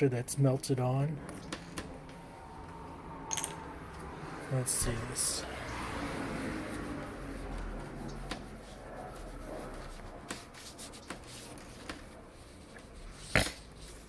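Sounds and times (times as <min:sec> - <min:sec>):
hands rubbing: 0:06.6 - 0:14.0.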